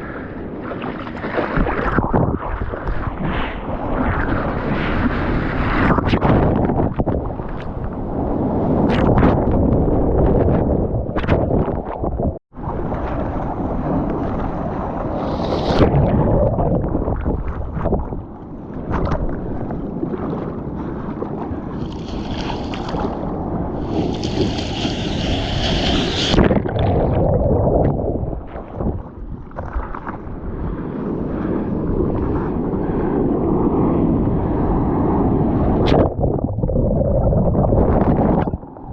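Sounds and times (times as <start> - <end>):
wind buffeting microphone: 0.0 - 38.9
sea water sloshing and splashing: 0.5 - 3.1, 12.6 - 30.8
hiss of foaming water: 23.8 - 26.4.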